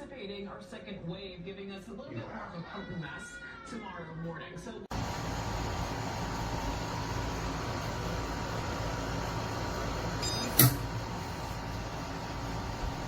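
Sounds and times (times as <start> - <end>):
steady low hum: 4.9 - 13.0
high electronic beep: 10.2 - 10.8
sharp click: 10.2 - 10.9.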